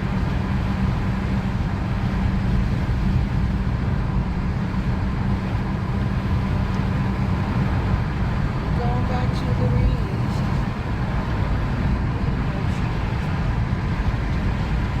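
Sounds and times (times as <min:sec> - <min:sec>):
car cabin road and engine noise: 0:00.0 - 0:15.0.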